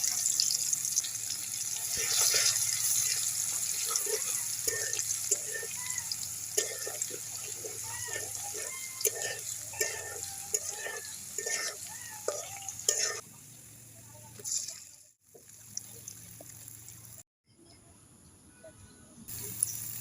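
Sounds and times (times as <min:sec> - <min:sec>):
steady hiss: 0:19.3 - 0:20.0.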